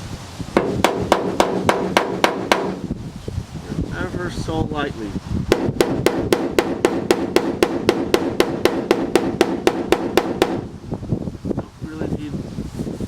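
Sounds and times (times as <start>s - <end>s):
hammer tapping sheet metal: 0.6s - 2.8s, 5.5s - 10.7s.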